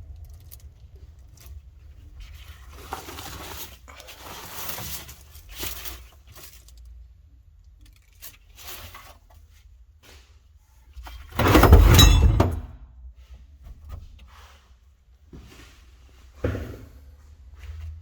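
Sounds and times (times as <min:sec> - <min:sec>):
faint knocks and scrapes: 0:07.8 - 0:18.0
metal parts clattering: 0:11.1 - 0:12.8.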